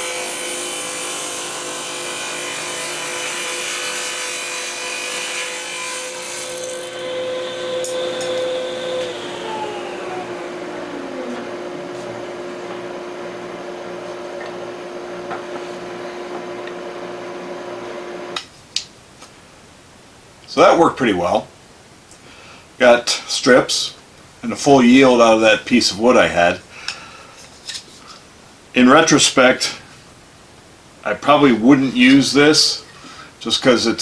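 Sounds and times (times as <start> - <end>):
table saw cutting wood: 0.0 - 18.4
steady machine hum: 6.8 - 18.1
motor spinning down: 6.9 - 15.4.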